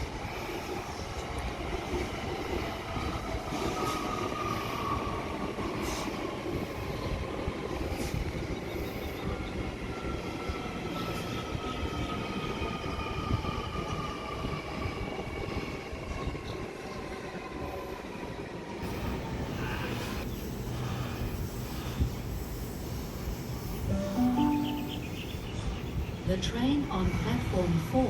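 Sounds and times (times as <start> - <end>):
electric train rumble: 0.0 - 28.0
train whine falling in pitch: 22.8 - 25.6.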